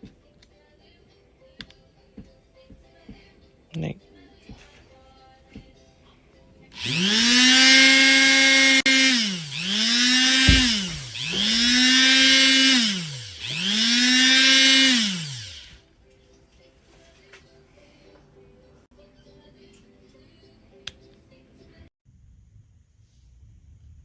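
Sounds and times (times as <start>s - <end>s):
rotary tool motor whining: 6.8s - 15.8s
short knock: 10.4s - 10.8s.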